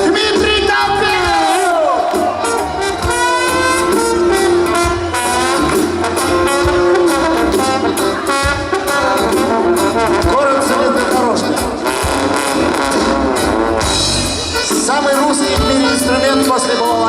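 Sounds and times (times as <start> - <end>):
live band playing: 0.0 - 17.0
trombone solo sliding: 2.3 - 17.0.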